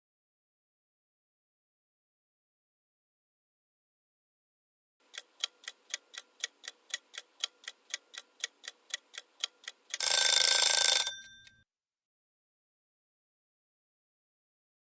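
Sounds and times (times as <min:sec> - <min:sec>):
timer ticking: 0:05.0 - 0:11.6
alarm bell ringing: 0:10.0 - 0:11.6.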